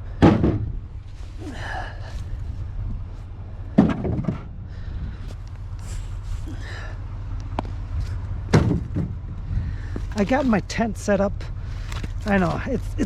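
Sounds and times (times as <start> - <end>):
firewood logs thudding: 0.0 - 5.6, 7.4 - 10.5, 11.8 - 13.0.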